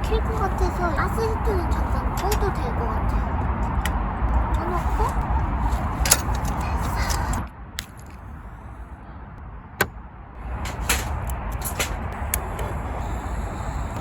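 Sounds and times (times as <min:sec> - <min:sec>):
gas heater burner hissing: 0:10.4 - 0:14.0
sharp clicks and knocks: 0:10.6 - 0:12.4.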